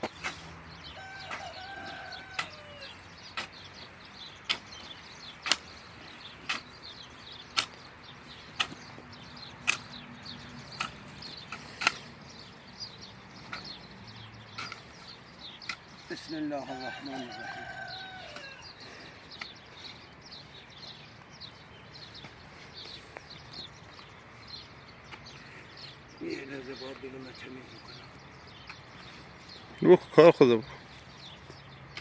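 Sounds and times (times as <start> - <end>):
birds chirping: 0.0 - 32.0
hand tool knocking into soil: 8.5 - 10.0.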